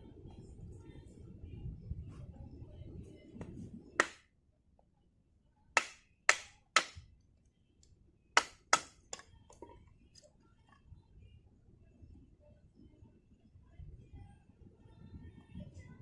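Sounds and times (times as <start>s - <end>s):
sharp knocks: 4.0s - 4.2s, 5.8s - 7.0s, 8.4s - 9.0s.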